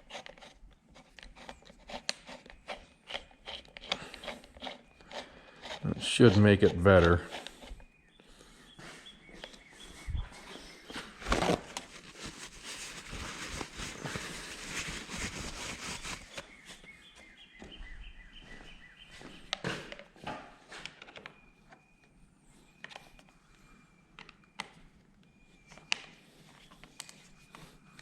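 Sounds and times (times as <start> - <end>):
handling rustling: 10.2 - 16.9.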